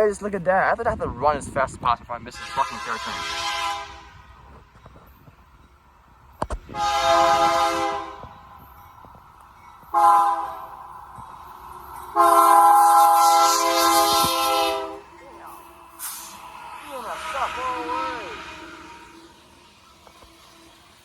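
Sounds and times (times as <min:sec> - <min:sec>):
locomotive air horn blasts: 0:02.3 - 0:04.2, 0:06.7 - 0:08.5, 0:09.9 - 0:10.8, 0:12.1 - 0:15.1, 0:15.9 - 0:19.4.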